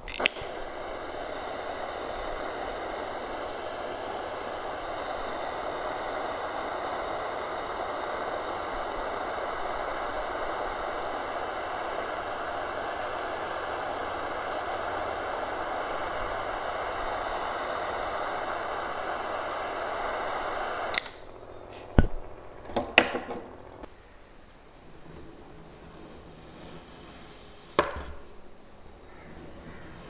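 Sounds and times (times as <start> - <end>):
steady hiss: 0.0 - 30.0
sharp click: 20.9 - 21.2.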